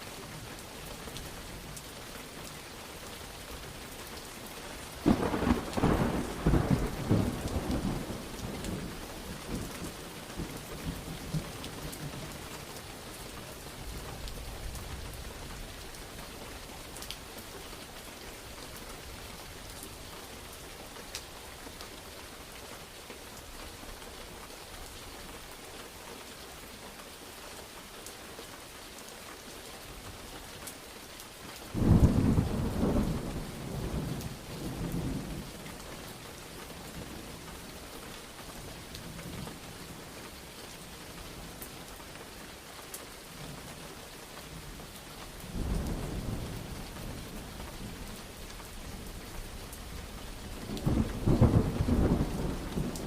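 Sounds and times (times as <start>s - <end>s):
steady rain: 0.0s - 53.0s
thunder rumbling: 5.0s - 9.7s, 31.8s - 35.5s, 50.4s - 53.0s.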